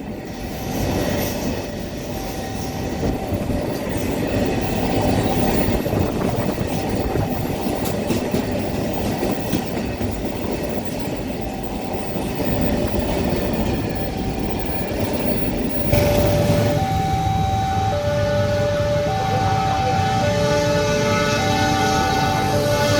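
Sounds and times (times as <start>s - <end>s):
rail car rumbling: 0.0s - 22.9s
wheels clattering on rails: 0.0s - 22.9s
siren steady tone: 11.2s - 22.9s.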